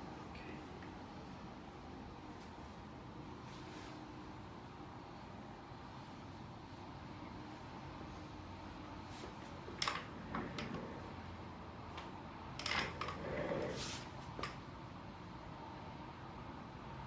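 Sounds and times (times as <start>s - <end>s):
rustle of movement on table: 9.0s - 14.6s.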